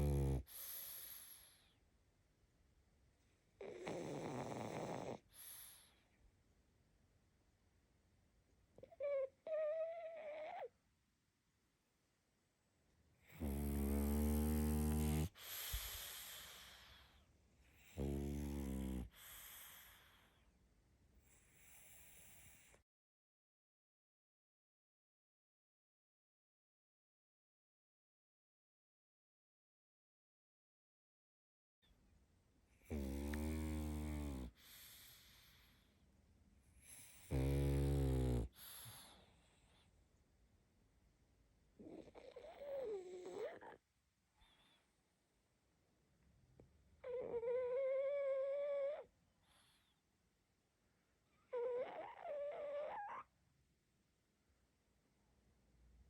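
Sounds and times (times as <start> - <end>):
dog snoring: 0.0 - 1.7, 3.6 - 6.0, 8.8 - 10.7, 13.2 - 20.4, 21.2 - 22.8, 32.8 - 35.8, 36.8 - 39.8, 41.8 - 43.8, 47.0 - 49.9, 51.4 - 53.3
dog breathing softly: 0.4 - 1.8, 15.2 - 18.0, 18.9 - 20.5, 33.2 - 36.0, 38.4 - 40.0.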